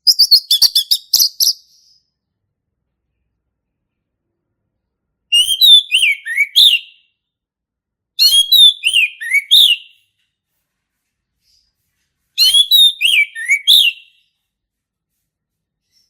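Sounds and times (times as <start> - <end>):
thrush singing whistled notes: 5.3 - 7.1, 8.2 - 10.0, 12.4 - 14.3.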